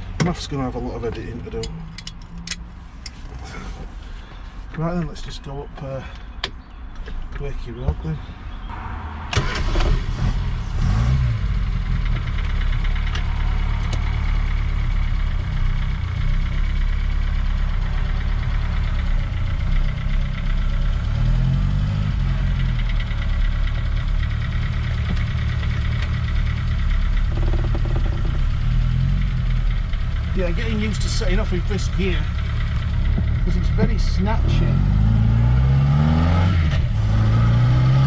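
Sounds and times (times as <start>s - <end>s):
car engine running: 9.3s - 38.0s.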